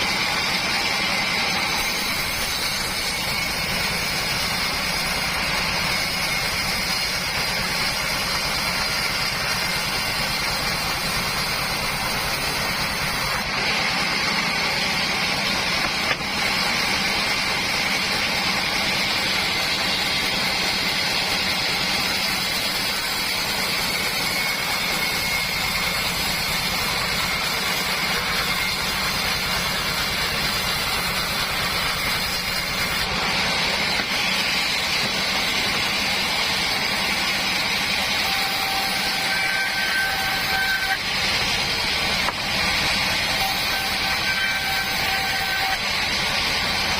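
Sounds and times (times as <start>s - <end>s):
sawmill drone with high whine: 0.0s - 46.9s.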